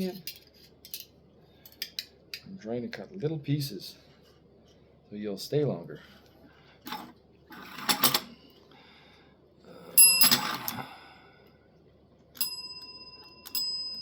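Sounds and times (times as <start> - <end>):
small bell ringing: 10.0 - 10.7, 12.4 - 14.0.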